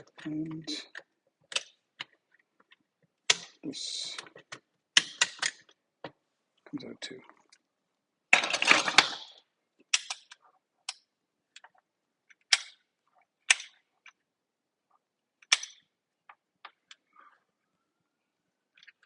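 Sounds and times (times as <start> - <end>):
plastic toy parts clicking: 0.1 - 3.6, 4.2 - 5.8, 8.4 - 12.8, 13.4 - 14.2, 15.4 - 17.0, 18.7 - 19.0.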